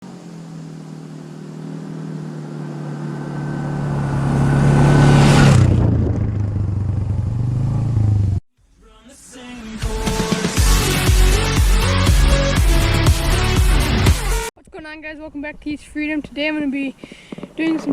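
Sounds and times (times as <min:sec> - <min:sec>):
atv engine running: 0:00.0 - 0:08.4, 0:10.6 - 0:14.5.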